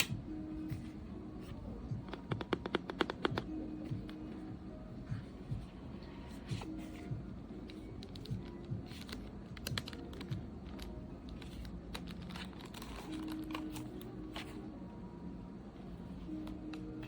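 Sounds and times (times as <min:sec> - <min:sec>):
soft background music: 0:00.0 - 0:17.0
plastic objects clicking and tapping: 0:02.1 - 0:03.5.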